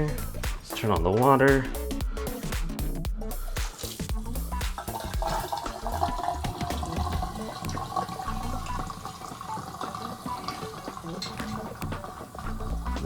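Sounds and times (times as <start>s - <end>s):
water running from faucet into sink: 3.4s - 13.0s.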